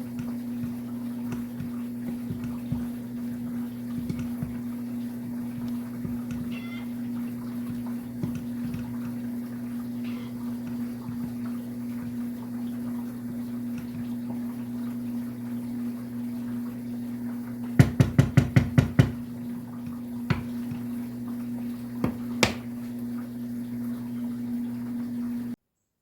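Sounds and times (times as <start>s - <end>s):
sharp knocks: 17.8s - 19.2s, 22.0s - 22.7s.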